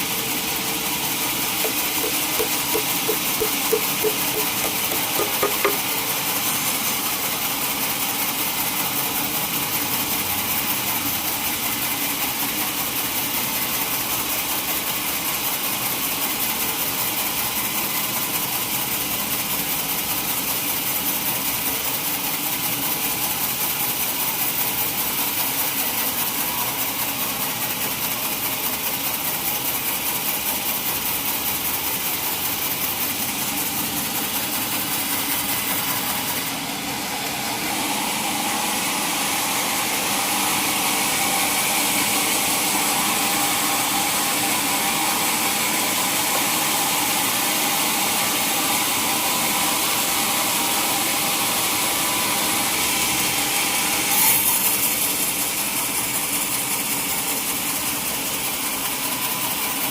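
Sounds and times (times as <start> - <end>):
sawmill machinery running: 0.0 - 59.9
light knocks: 1.6 - 6.1.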